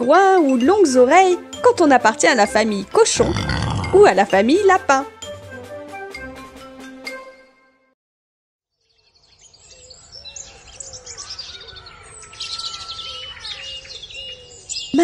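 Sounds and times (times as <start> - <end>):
small birds chirping: 8.8 - 15.0.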